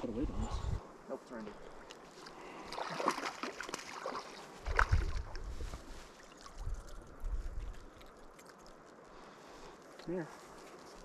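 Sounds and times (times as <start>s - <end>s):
water sloshing and splashing: 1.4s - 10.0s.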